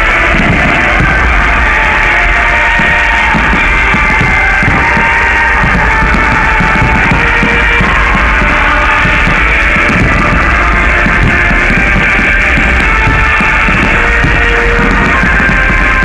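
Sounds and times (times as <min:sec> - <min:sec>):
loud rock music: 0:00.0 - 0:16.0.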